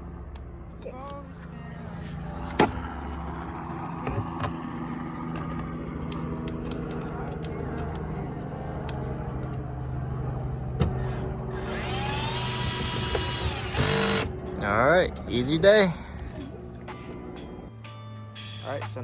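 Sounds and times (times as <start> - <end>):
cordless drill whining: 10.8 - 14.3
background music: 13.6 - 19.0.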